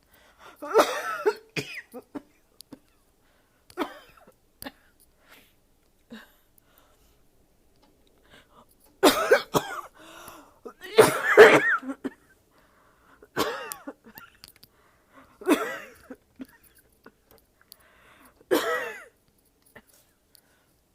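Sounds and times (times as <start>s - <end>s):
person coughing hard: 0.6s - 2.9s, 3.8s - 4.9s, 9.0s - 10.0s, 10.7s - 12.3s, 13.3s - 14.4s, 15.4s - 17.2s, 18.5s - 19.2s.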